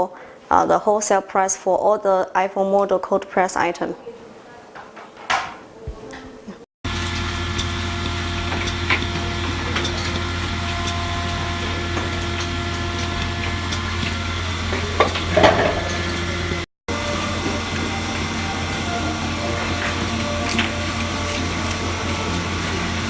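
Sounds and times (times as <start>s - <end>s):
loud clatter: 6.9s - 16.6s
machine humming: 6.9s - 23.0s.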